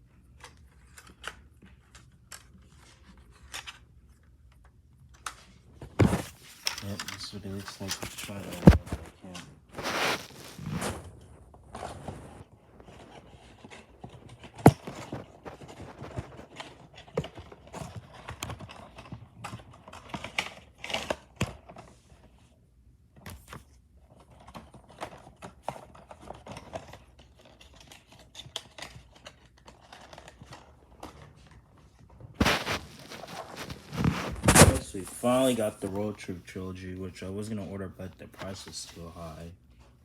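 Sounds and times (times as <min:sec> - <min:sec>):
plastic cases clicking and crinkling: 0:05.1 - 0:09.2.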